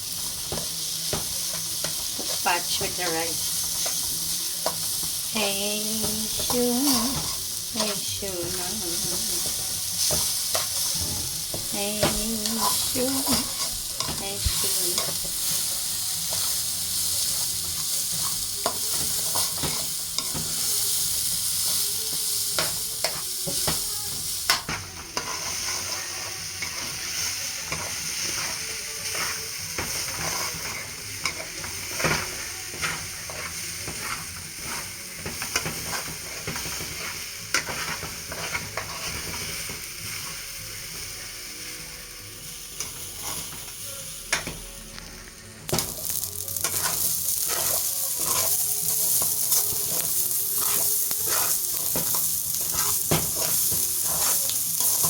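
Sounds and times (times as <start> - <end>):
rice sizzling in oil: 0.0 - 55.0
utensil scraping and knocking pot: 45.7 - 55.0.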